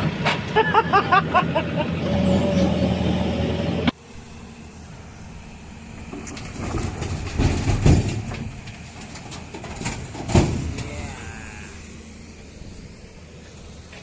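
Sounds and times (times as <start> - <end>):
heavy vehicle rumbling: 0.0 - 14.0
clanks and knocks: 6.2 - 10.8.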